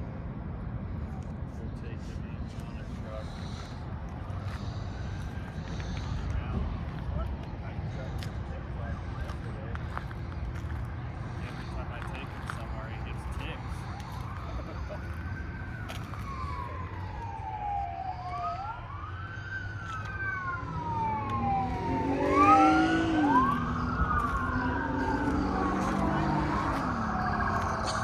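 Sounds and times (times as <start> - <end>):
emergency siren wailing: 1.2 - 28.0
lower siren tone: 11.4 - 28.0.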